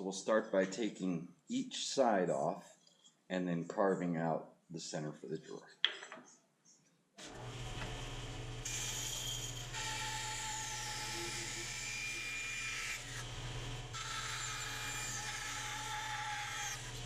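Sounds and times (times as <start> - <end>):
bandsaw blade cutting wood: 7.2 - 17.0
bandsaw motor humming: 7.2 - 17.0.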